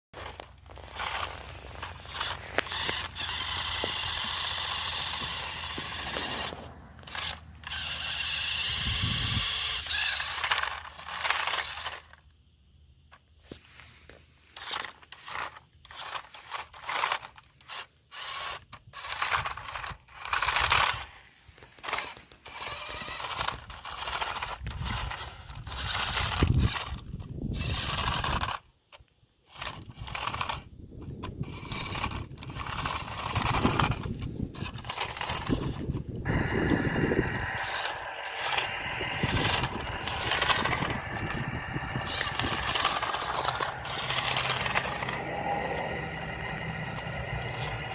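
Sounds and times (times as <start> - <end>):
tyres crunching over dirt and rocks: 0.2 - 8.0
toy truck motor and gears whining: 0.2 - 47.9.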